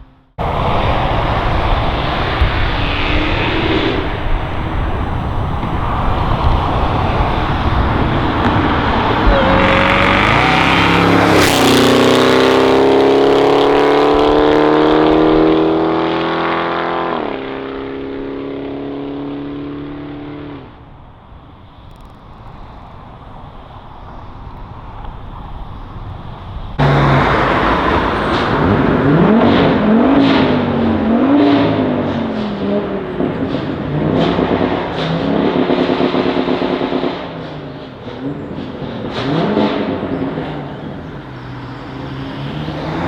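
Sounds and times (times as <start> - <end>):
exhaust pops and crackles: 0.4 - 12.2
car engine revving: 0.4 - 20.0, 26.8 - 43.0
sports car accelerating past: 0.4 - 20.7, 26.8 - 43.0.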